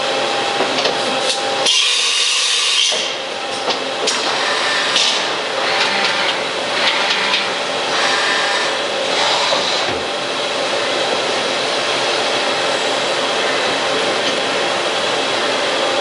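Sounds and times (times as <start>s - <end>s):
machining center running: 0.0s - 16.0s
machine hissing: 4.1s - 15.8s.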